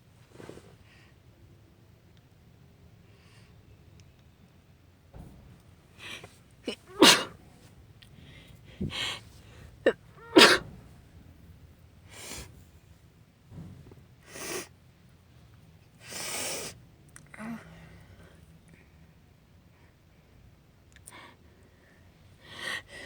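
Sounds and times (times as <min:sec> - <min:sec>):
woman sneezing: 0:06.7 - 0:07.4, 0:09.9 - 0:10.7
noisy breaths: 0:07.2 - 0:10.9, 0:12.0 - 0:12.9, 0:16.0 - 0:16.8.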